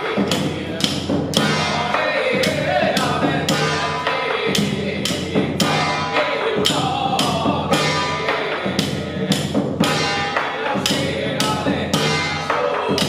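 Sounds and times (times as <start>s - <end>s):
sharp percussion beat: 0.0s - 13.0s
wavering melody: 1.4s - 2.8s, 5.6s - 7.1s, 7.7s - 8.8s, 9.8s - 11.3s, 11.9s - 13.0s.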